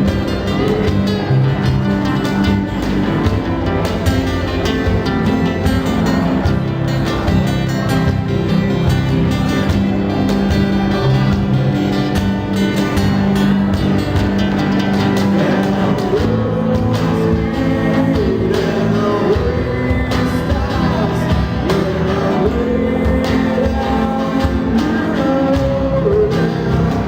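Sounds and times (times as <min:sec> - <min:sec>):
cajon beats: 0:00.0 - 0:27.0
strummed acoustic guitars: 0:00.0 - 0:27.0
person singing: 0:15.0 - 0:27.0.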